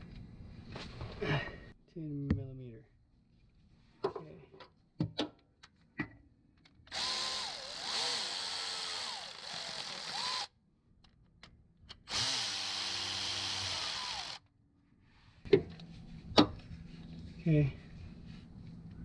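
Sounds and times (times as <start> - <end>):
power drill whining: 6.9 - 10.5, 12.1 - 14.4.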